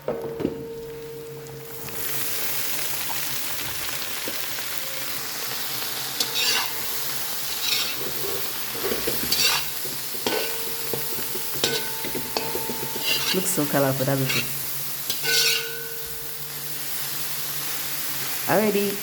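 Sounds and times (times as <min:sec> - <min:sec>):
vegetables sizzling in a pan: 0:00.0 - 0:19.0
spatula scraping a pan: 0:06.2 - 0:16.2.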